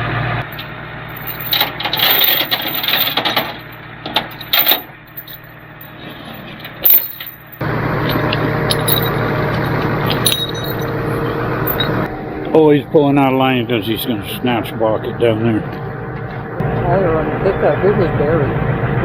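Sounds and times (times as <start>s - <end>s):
metal rigging clinking: 0.6s - 12.1s.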